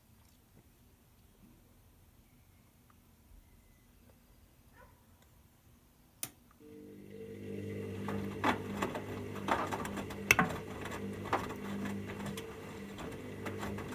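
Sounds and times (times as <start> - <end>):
washing machine drum motor humming: 6.6 - 13.9
washing machine click: 7.5 - 13.9
drum clicks and knocks: 8.0 - 13.9.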